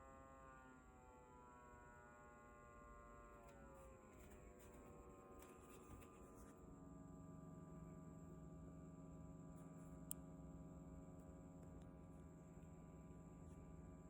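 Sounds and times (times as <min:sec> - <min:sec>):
air purifier humming: 0:03.4 - 0:14.0.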